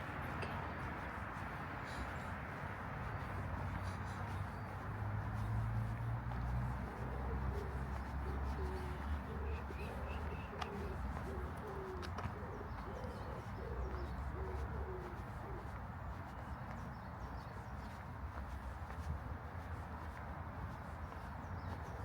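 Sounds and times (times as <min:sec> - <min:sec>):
pigeon cooing: 0:06.9 - 0:15.8.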